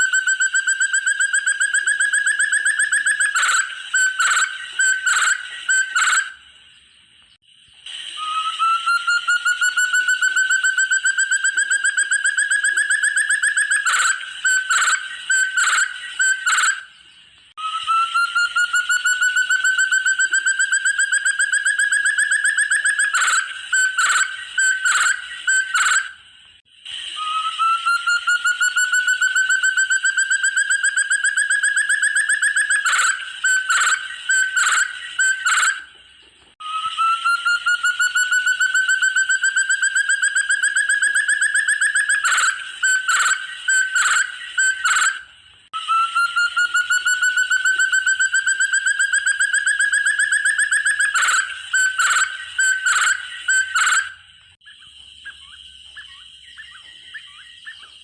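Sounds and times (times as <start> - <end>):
partridge calling: 0.0 - 6.4, 8.2 - 17.2, 17.8 - 26.2, 27.2 - 36.0, 36.7 - 58.0.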